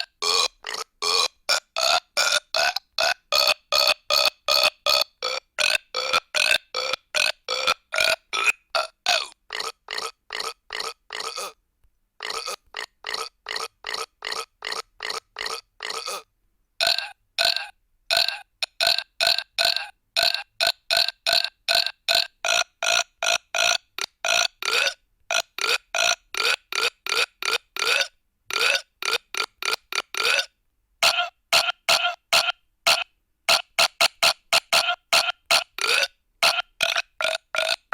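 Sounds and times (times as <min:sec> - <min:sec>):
short burps: 0:00.0 - 0:11.6, 0:12.2 - 0:20.7, 0:29.6 - 0:37.9.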